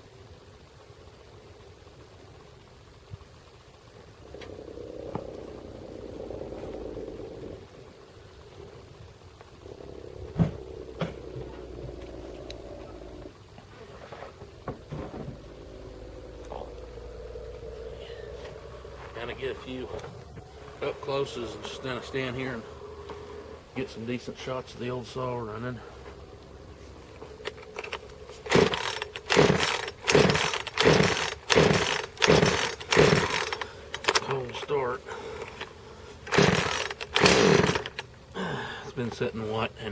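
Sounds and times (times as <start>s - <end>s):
chainsaw idling: 4.2s - 7.6s, 9.4s - 13.7s, 14.4s - 39.9s
sharp knocks and clunks: 10.3s - 12.1s, 14.1s - 15.5s
chainsaw engine turning over: 27.2s - 38.7s
chainsaw starter cord yanks: 27.4s - 38.2s.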